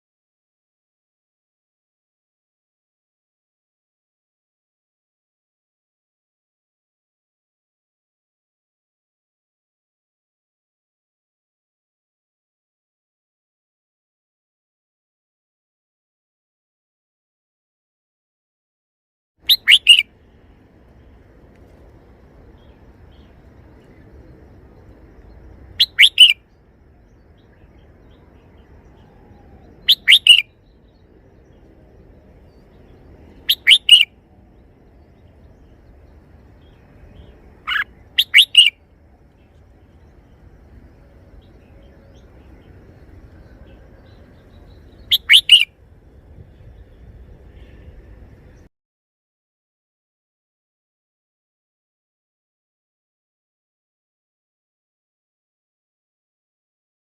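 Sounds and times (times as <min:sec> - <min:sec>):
bird singing short phrases: 0:19.4 - 0:20.1, 0:25.7 - 0:31.6, 0:32.4 - 0:34.1, 0:34.9 - 0:38.8, 0:41.3 - 0:45.7
faint low background noise: 0:19.4 - 0:48.7.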